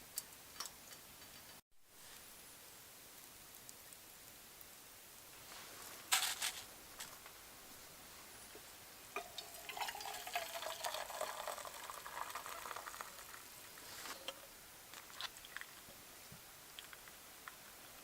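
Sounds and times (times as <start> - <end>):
liquid pouring and splashing: 9.2 - 13.9.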